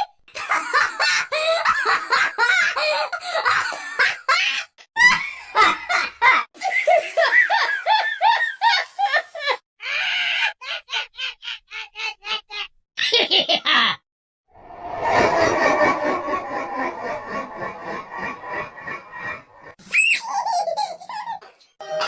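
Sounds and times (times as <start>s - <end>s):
cartoon character laughing: 10.3s - 14.0s, 19.9s - 21.5s.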